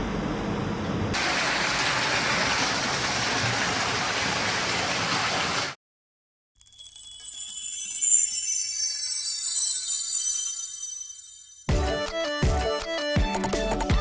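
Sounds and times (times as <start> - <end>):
music with jingling bells: 6.6 - 14.0.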